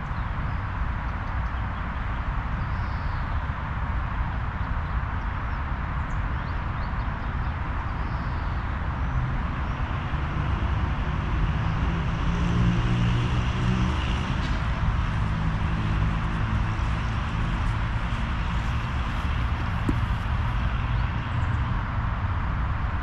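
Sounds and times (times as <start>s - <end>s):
wind rumbling on microphone: 14.2s - 23.0s.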